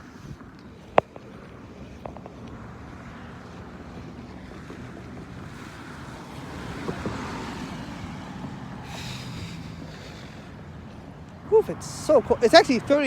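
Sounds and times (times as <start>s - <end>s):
tyres hissing on wet road: 5.4s - 13.0s.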